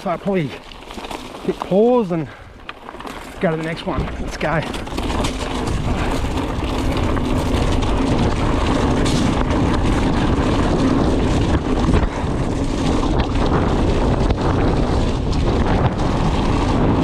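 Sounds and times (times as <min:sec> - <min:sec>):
bike knocks and rattles: 0:00.0 - 0:17.0
tyres rumbling on gravel: 0:00.0 - 0:17.0
wind rushing over microphone: 0:03.4 - 0:17.0.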